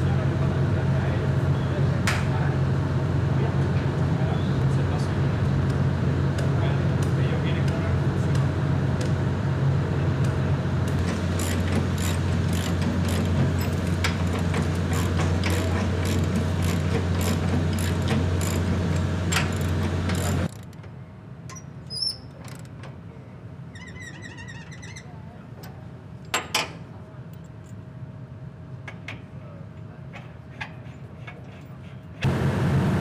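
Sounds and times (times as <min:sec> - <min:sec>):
large engine humming: 0:00.0 - 0:20.8, 0:32.2 - 0:33.0.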